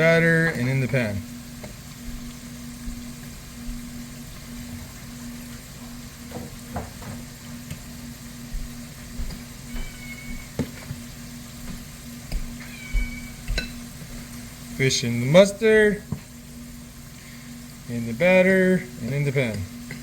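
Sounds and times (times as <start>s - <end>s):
fish frying in oil: 0.0s - 20.0s
utensils knocking against pan: 13.4s - 13.9s.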